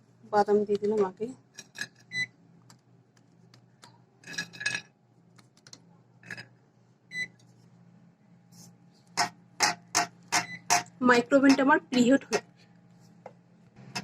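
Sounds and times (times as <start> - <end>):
microwave oven beeps: 2.1 - 2.4, 7.1 - 7.4, 10.4 - 10.7
kitchen utensils clinking: 4.2 - 4.9.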